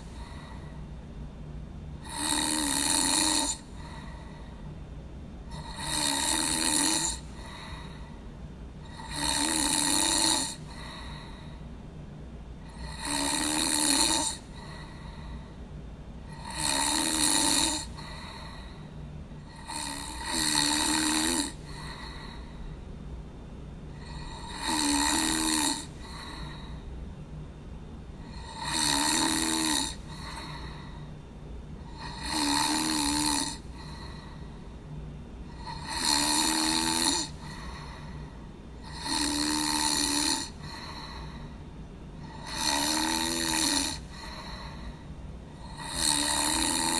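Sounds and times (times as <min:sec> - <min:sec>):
person snoring: 0:00.0 - 0:00.8, 0:02.0 - 0:04.6, 0:05.5 - 0:08.1, 0:08.8 - 0:11.6, 0:12.6 - 0:15.5, 0:16.3 - 0:22.6, 0:24.0 - 0:26.8, 0:28.2 - 0:31.1, 0:31.8 - 0:34.6, 0:35.5 - 0:41.6, 0:42.2 - 0:46.9.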